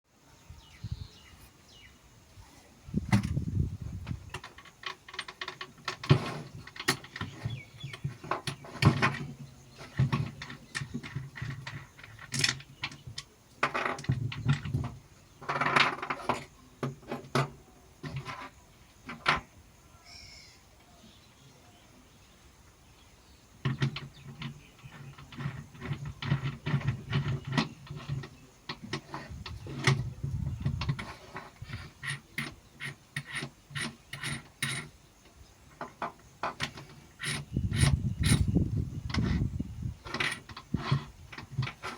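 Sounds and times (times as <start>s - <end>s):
metal tool parts clinking and rattling: 4.3s - 16.5s.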